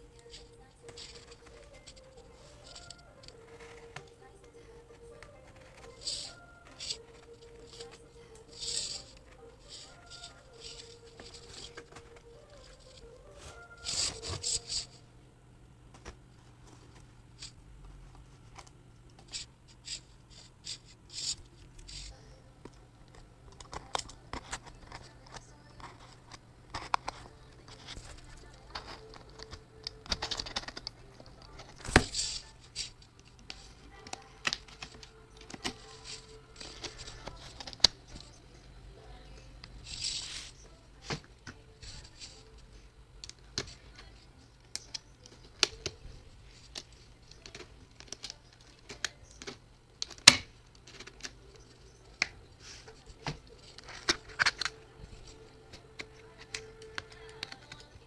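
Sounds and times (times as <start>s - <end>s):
wrapping rustling: 0.0s - 15.0s, 15.9s - 38.4s
packaging clicks and taps: 0.2s - 4.3s, 21.2s - 38.4s, 46.6s - 58.0s.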